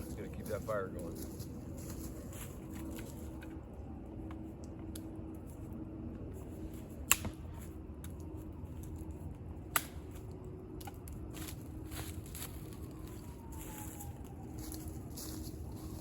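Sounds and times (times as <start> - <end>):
campfire crackling: 0.0 - 16.0
campfire pops: 7.0 - 7.4, 9.7 - 10.0.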